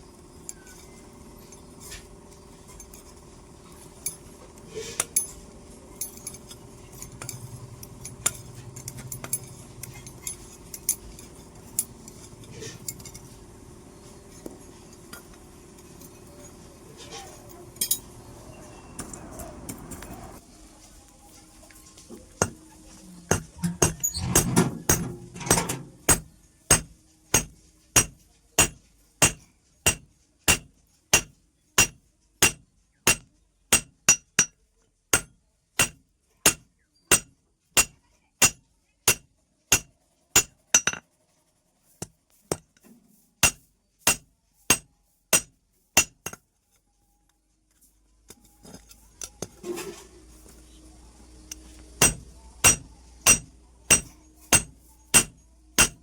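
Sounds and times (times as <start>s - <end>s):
hammer striking metal: 17.8s - 18.1s, 23.3s - 41.0s, 43.4s - 46.4s, 52.0s - 56.0s.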